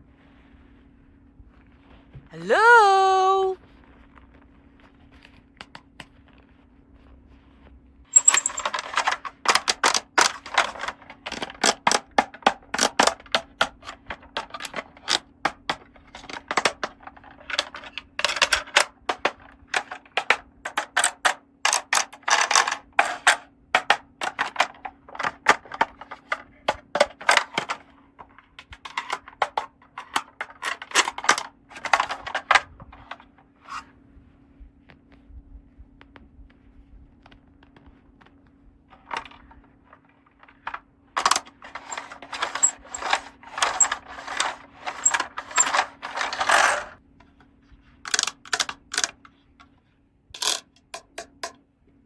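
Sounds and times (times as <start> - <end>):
plastic toy pieces clattering: 8.1 - 33.2, 40.4 - 47.0, 48.1 - 49.3, 50.4 - 51.6.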